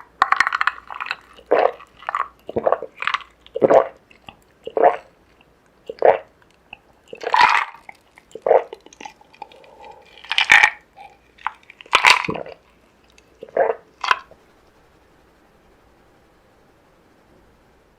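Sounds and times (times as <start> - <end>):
wet chewing and crunchy bites: 0.2 - 14.3.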